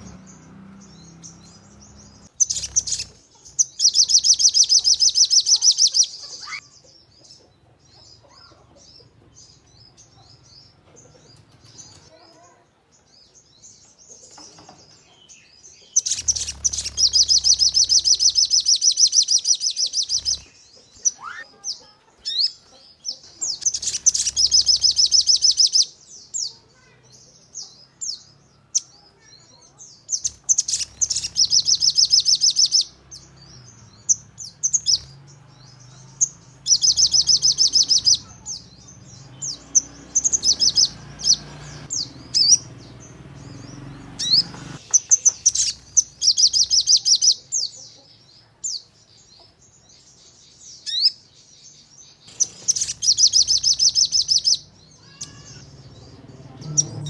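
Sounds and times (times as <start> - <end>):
bird sharp chirps: 0.0 - 7.4, 13.2 - 48.0, 52.2 - 57.0
bird high trills: 1.0 - 6.7, 16.0 - 21.6, 30.2 - 33.3, 36.2 - 43.0.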